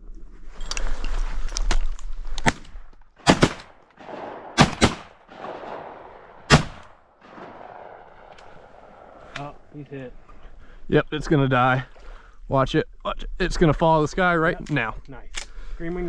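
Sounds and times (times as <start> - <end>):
shotgun shots: 2.4 - 9.7.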